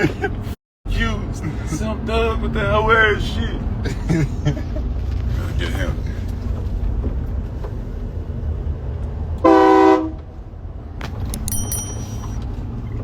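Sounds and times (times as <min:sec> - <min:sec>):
train horn blast: 0:09.4 - 0:10.2.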